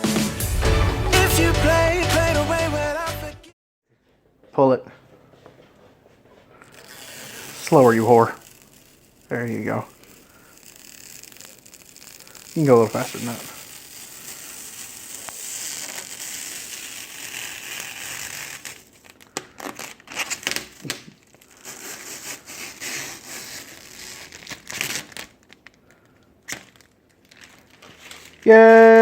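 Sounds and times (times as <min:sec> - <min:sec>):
plastic film crackling and crinkling: 0:06.6 - 0:28.5
plastic film peeling hiss: 0:06.6 - 0:28.5.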